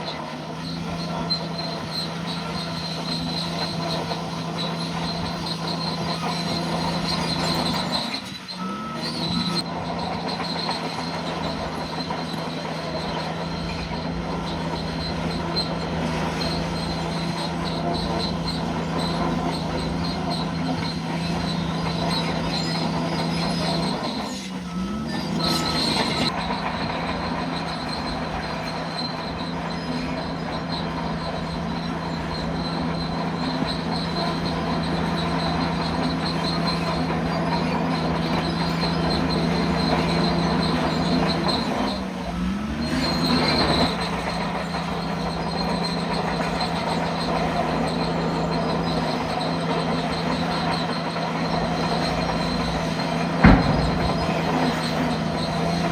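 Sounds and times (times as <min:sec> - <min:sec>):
bulldozer diesel engine running: 0:00.0 - 0:55.9
high-pitched squeal: 0:00.0 - 0:55.9.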